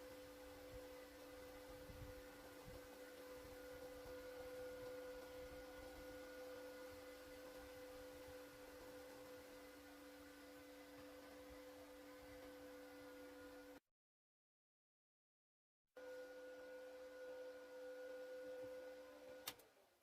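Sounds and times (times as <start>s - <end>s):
faint steady hum: 0.0s - 13.8s.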